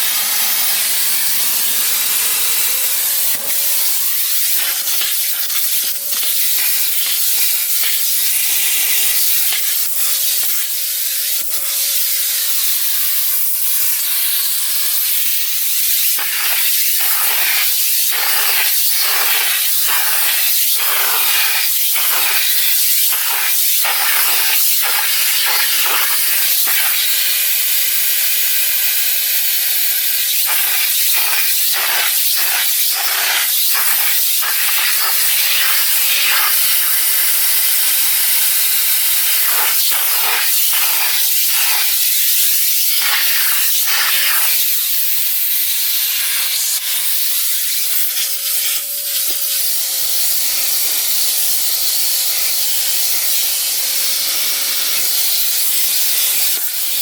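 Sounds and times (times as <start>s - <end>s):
vacuum cleaner hissing and whining: 16.2s - 44.6s
vacuum nozzle strokes: 30.4s - 37.7s.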